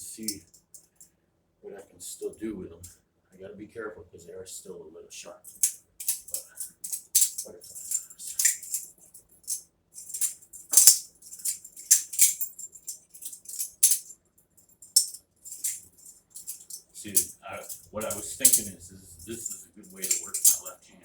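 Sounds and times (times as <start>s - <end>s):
butterfly knife metallic clicks: 5.5s - 8.8s.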